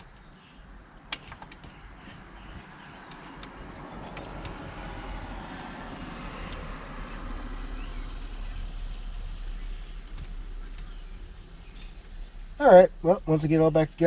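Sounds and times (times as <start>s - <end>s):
road vehicle rumble: 0.0s - 14.0s
light clicks: 6.4s - 7.2s, 11.7s - 12.1s.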